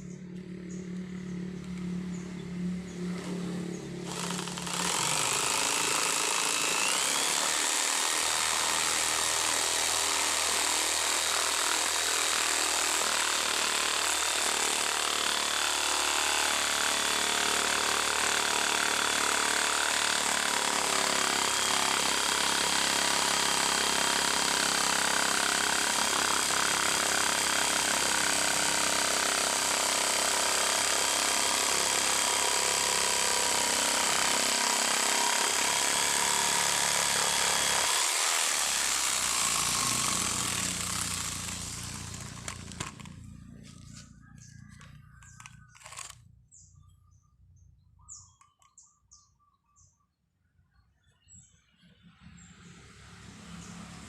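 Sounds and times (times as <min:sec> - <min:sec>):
power tool whining: 0:03.1 - 0:46.2.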